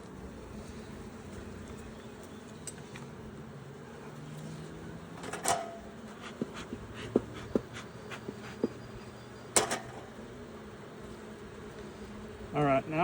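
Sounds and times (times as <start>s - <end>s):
bees buzzing: 0.0s - 13.0s
hive tool clicking on wooden frames: 5.2s - 9.9s.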